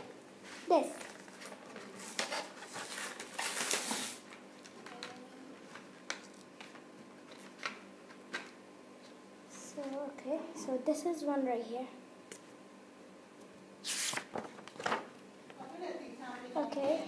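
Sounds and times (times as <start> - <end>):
packaging rustling and crinkling: 0.9 - 7.8.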